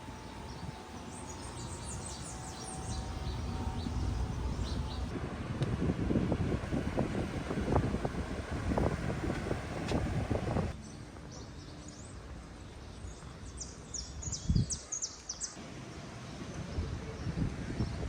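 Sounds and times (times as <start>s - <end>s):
high rising chirps: 0.0s - 5.1s
wind buffeting microphone: 0.0s - 10.8s, 13.9s - 14.8s, 16.5s - 18.0s
wind and surf hiss: 0.0s - 18.0s.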